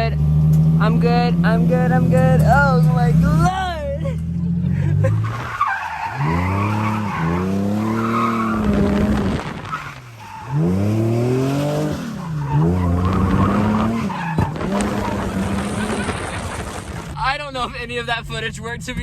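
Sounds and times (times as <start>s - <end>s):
car engine revving: 0.0s - 19.0s
tyres squealing and skidding: 5.0s - 17.2s.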